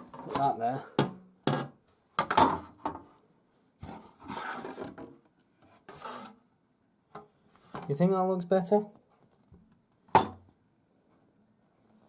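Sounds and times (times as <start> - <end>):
plastic panel rubbing slide: 3.9 - 5.0, 5.9 - 6.4.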